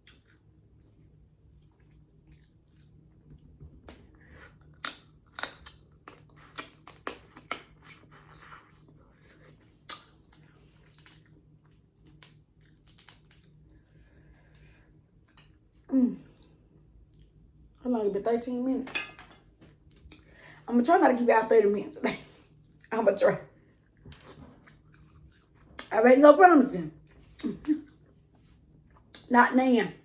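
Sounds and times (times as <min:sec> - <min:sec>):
chewing: 0:00.0 - 0:03.5, 0:04.1 - 0:15.7, 0:23.6 - 0:26.0, 0:27.0 - 0:29.3
crab shell cracking: 0:04.8 - 0:07.7, 0:12.0 - 0:13.6.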